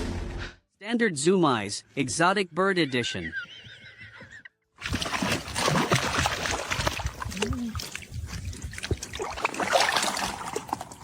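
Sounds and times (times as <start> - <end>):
water splashing and trickling: 4.8 - 11.0.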